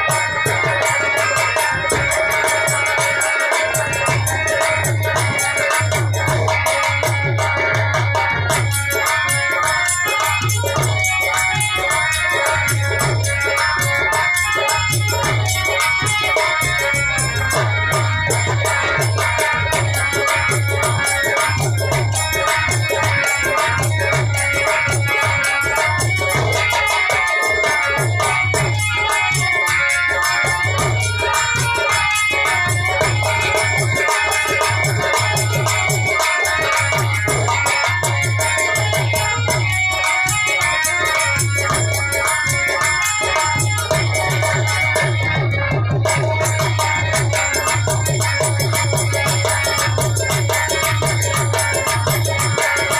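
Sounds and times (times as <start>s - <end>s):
hand drum beat: 0.0s - 52.9s
harmonium melody: 0.0s - 52.9s.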